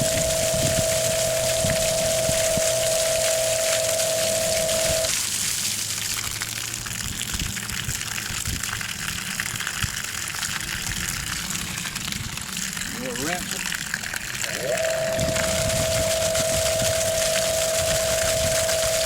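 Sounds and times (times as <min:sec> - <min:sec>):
steady tone: 0:00.0 - 0:05.1, 0:14.4 - 0:19.0
pump hum: 0:00.0 - 0:19.0
water gushing: 0:00.0 - 0:19.0.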